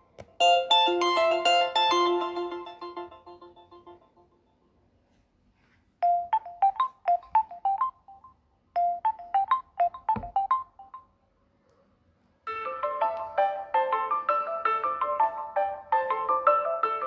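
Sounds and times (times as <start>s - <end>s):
phone ringtone melody: 0.4s - 4.3s, 6.0s - 11.1s, 12.5s - 17.0s.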